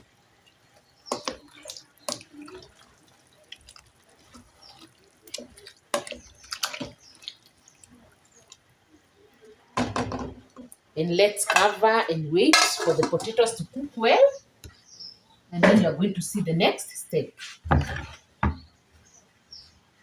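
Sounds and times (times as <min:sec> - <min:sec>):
water splashing into stew: 0:00.8 - 0:08.8.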